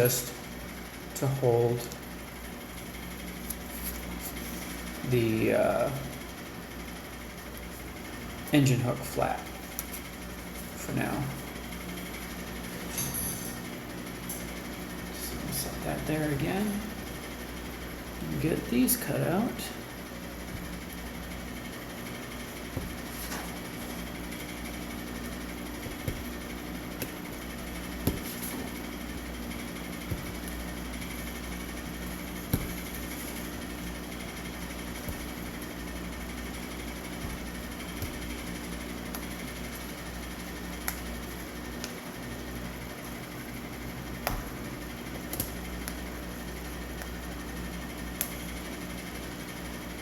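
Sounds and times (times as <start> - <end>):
low machine hum: 0.0 - 50.0.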